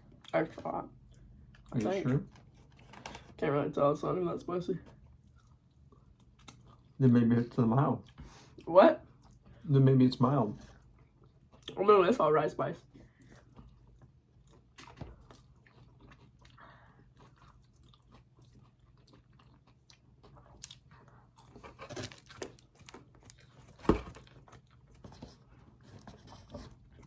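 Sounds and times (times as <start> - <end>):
chewing crispy fried chicken: 4.8 - 11.8, 12.7 - 27.0.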